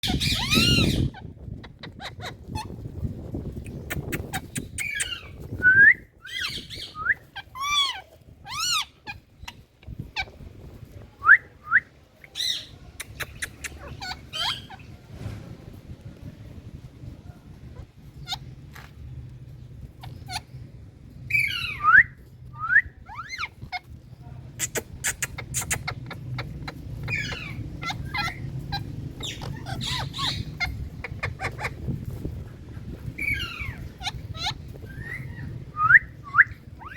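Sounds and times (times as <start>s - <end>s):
parakeets screeching: 0.0s - 2.8s, 4.2s - 5.4s, 6.3s - 10.7s, 12.4s - 15.1s, 17.8s - 18.9s, 19.8s - 22.0s, 23.0s - 36.9s
low background hum: 0.0s - 36.9s.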